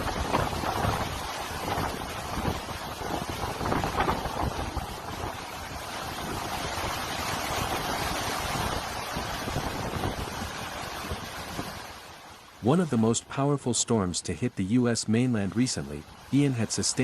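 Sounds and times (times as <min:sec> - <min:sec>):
wind buffeting microphone: 0:00.0 - 0:12.0
rushing water: 0:00.0 - 0:17.0.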